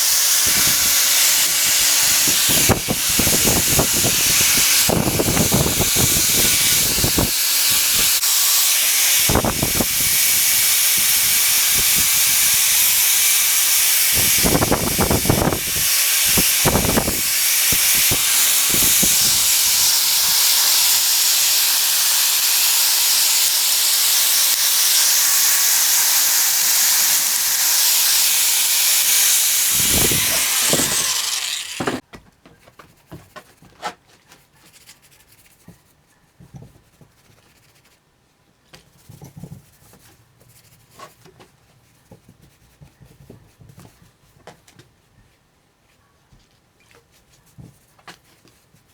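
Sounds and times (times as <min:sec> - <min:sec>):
high-pressure spray hissing: 0:00.0 - 0:32.0.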